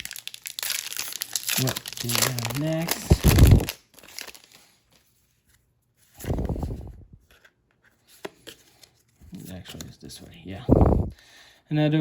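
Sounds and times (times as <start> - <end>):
wrapper crinkling and tearing: 0.0 - 4.8.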